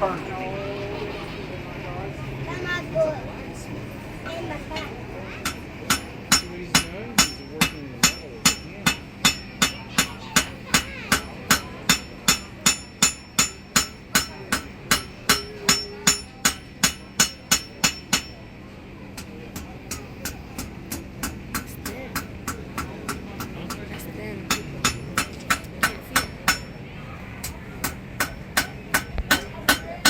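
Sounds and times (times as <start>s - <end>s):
hammer ringing on anvil: 5.4s - 18.4s, 24.5s - 26.8s, 27.8s - 30.0s.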